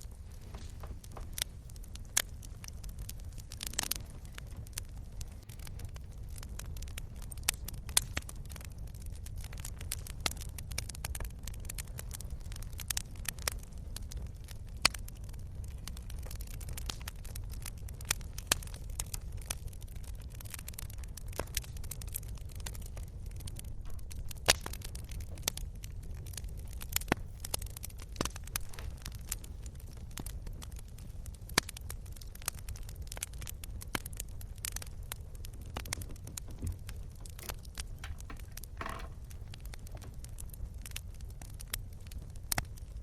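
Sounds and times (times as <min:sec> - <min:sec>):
wood fire crackling: 0:00.0 - 0:43.0.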